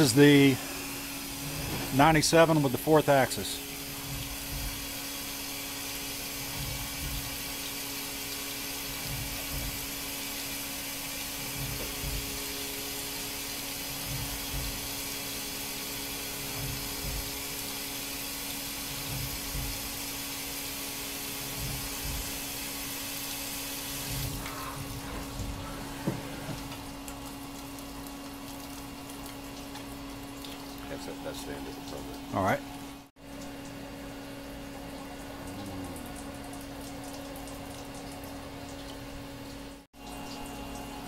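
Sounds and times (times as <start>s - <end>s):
coolant hissing: 0.0s - 41.0s
machine hum: 0.0s - 41.0s
soft low thumps: 3.9s - 5.0s, 11.5s - 12.4s, 21.5s - 22.4s.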